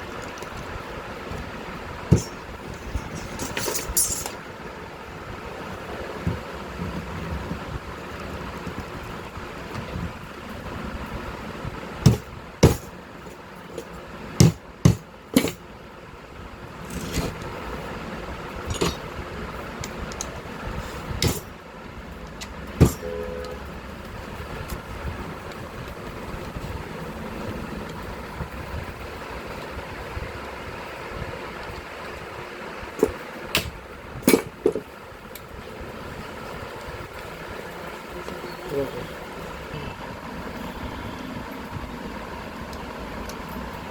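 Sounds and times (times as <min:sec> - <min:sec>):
low steady background noise: 0:00.0 - 0:43.9
steady background hum: 0:00.0 - 0:43.9
tool knocking on metal parts: 0:02.0 - 0:04.4, 0:12.0 - 0:13.0, 0:13.7 - 0:15.6, 0:18.6 - 0:19.2, 0:21.1 - 0:21.6, 0:22.2 - 0:23.2.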